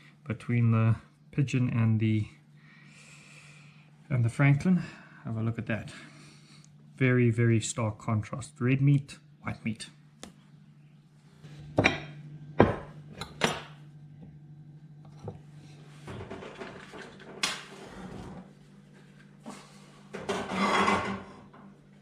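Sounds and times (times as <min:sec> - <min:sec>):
steady low hum: 0:00.0 - 0:20.5
cookware knocking on counter: 0:11.8 - 0:13.7
utensils scraping and clattering: 0:20.2 - 0:21.5.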